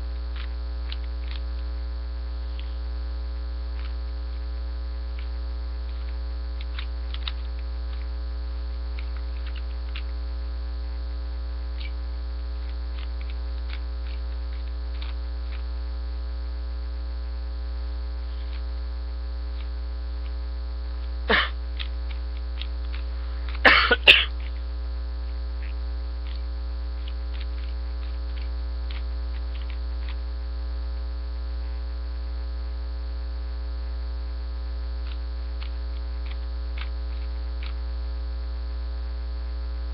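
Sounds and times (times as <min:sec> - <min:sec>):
electrical mains hum: 0:00.0 - 0:39.9
person coughing: 0:21.3 - 0:21.6, 0:23.6 - 0:24.4.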